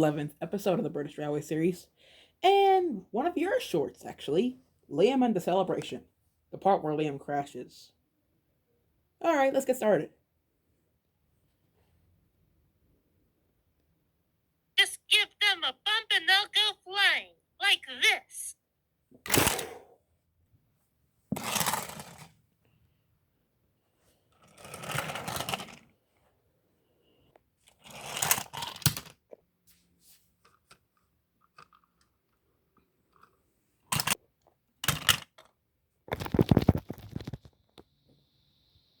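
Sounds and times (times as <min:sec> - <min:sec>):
toy trucks scraping and clattering: 0:21.3 - 0:22.3, 0:24.3 - 0:25.9, 0:27.7 - 0:29.0.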